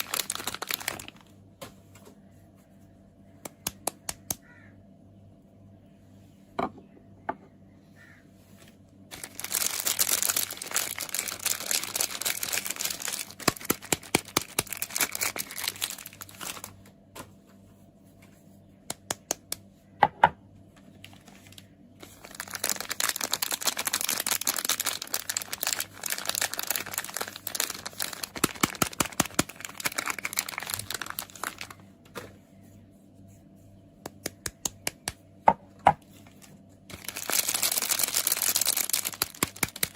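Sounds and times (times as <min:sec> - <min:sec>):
wrapper crinkling and tearing: 0:00.0 - 0:01.3, 0:09.1 - 0:16.9, 0:21.0 - 0:31.8, 0:36.2 - 0:39.9.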